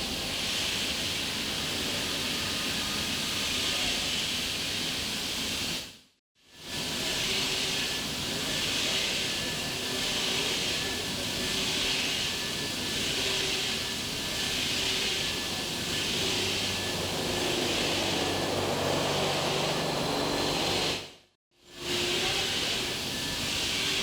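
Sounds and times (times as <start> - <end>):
milling machine cutting steel: 13.6 - 21.1.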